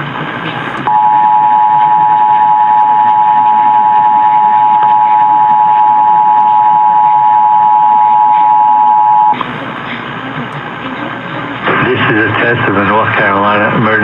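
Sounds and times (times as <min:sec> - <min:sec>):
radio static hiss: 0:00.0 - 0:14.0
two-tone alert signal: 0:00.9 - 0:09.4.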